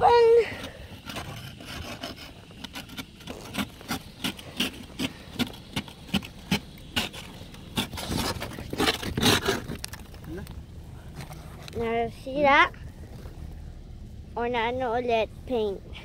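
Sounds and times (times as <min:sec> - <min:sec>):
ice scraped off car body: 0:00.1 - 0:10.2.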